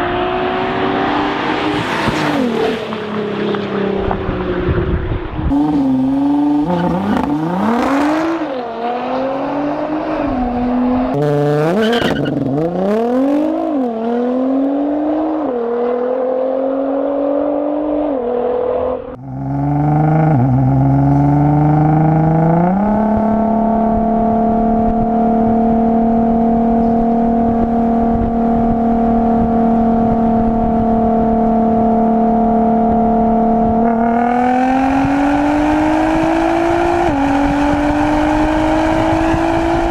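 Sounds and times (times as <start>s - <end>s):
car engine revving: 0.0s - 39.9s.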